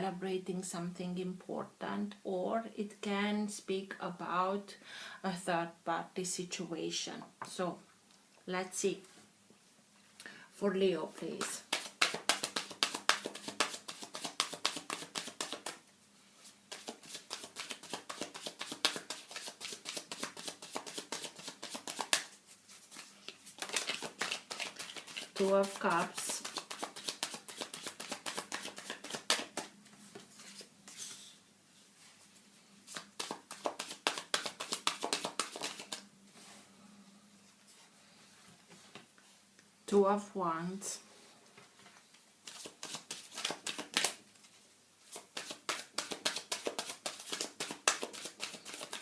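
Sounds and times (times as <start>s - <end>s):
cards being shuffled: 11.3s - 15.8s, 16.7s - 30.7s, 32.9s - 36.0s, 42.4s - 44.2s, 45.0s - 49.0s.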